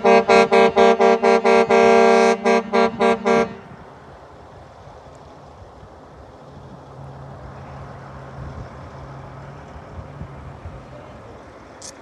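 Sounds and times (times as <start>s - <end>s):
road noise: 0.0s - 12.0s
truck diesel engine hum: 0.0s - 12.0s.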